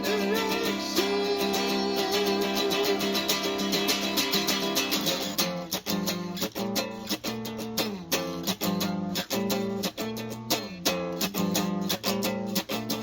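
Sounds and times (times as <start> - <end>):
guitar strumming chords: 0.0 - 13.0.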